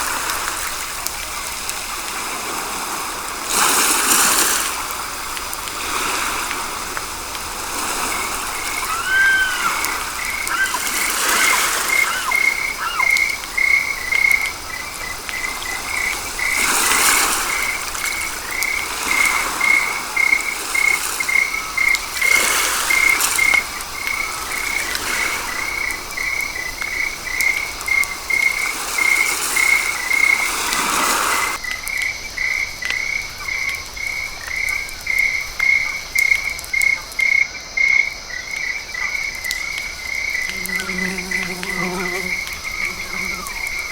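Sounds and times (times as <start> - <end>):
frog croaking: 7.9 - 18.9, 40.3 - 43.9.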